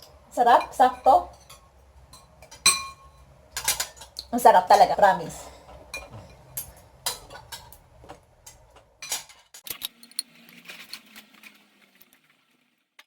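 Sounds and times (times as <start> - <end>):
cutlery clinking against a bowl: 0.0 - 4.3, 5.6 - 10.3
faint steady hum: 0.0 - 9.4.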